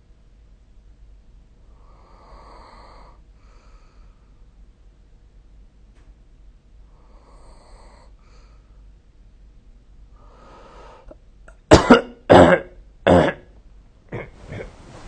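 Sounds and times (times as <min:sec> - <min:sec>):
faint breathing: 0:01.6 - 0:04.6, 0:06.8 - 0:09.0, 0:10.1 - 0:11.2
person coughing: 0:11.5 - 0:13.5, 0:14.1 - 0:14.8.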